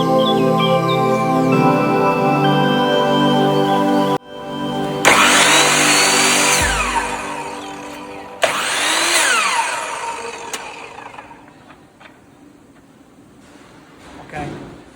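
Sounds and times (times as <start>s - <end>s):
mitre saw blade whining: 5.0s - 11.6s.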